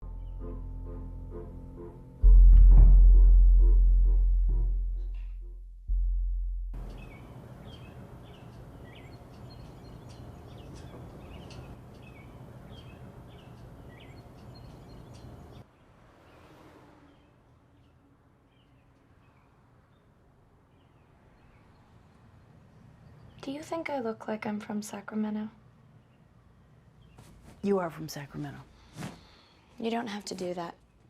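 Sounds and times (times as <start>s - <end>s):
outdoor ambience: 0.0s - 31.0s
deep boom: 2.2s - 7.0s
small birds chirping: 6.8s - 16.5s.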